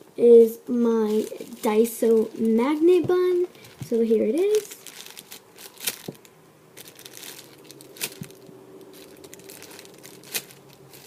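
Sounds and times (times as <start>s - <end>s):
faint steady hum: 0.0s - 11.0s
plastic packaging crinkling: 1.0s - 11.0s.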